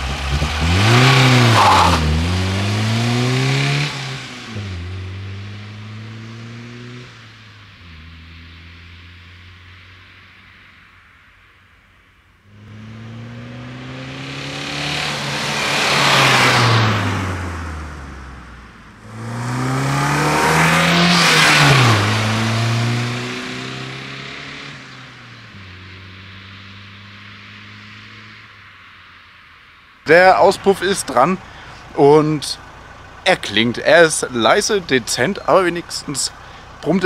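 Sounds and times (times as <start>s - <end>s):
car engine driving past: 12.5s - 29.2s
low engine hum: 30.1s - 37.0s.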